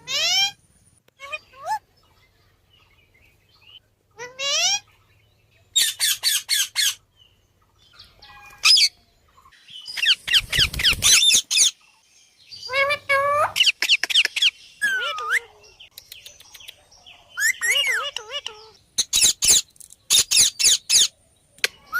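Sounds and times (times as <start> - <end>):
parrot squawking: 0.0 - 0.6, 1.2 - 1.8, 4.2 - 4.9, 12.7 - 15.5, 17.4 - 21.1.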